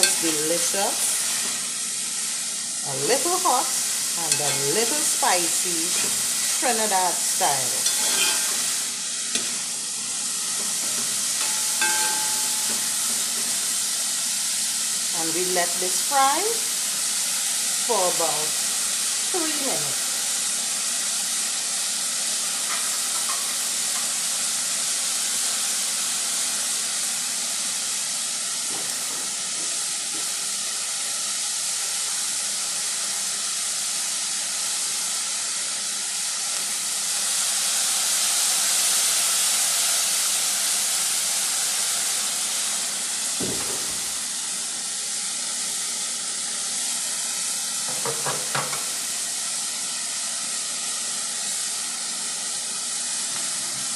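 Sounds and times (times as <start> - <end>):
food sizzling in a pan: 0.0 - 53.9
single knock: 43.4 - 44.0.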